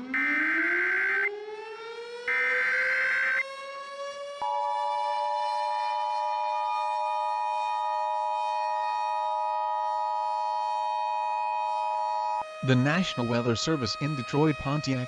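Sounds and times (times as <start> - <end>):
two-tone alarm: 0.0 - 1.3, 2.3 - 3.4
outdoor warning siren: 0.0 - 11.8.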